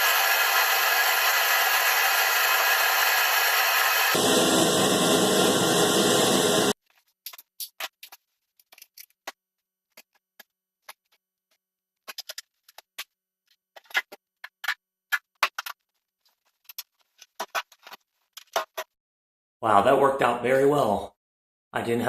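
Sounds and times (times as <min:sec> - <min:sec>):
power saw cutting: 0:00.0 - 0:06.8.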